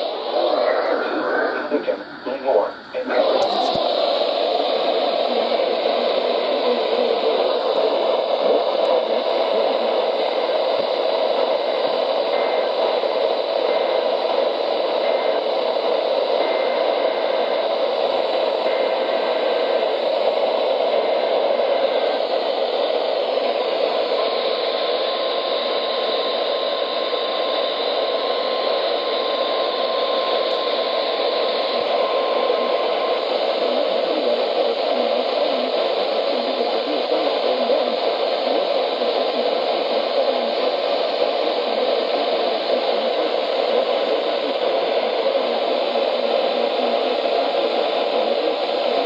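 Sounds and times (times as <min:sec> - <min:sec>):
radio static hiss: 0:00.0 - 0:49.0
faint steady whistle: 0:12.2 - 0:20.2, 0:20.9 - 0:34.3.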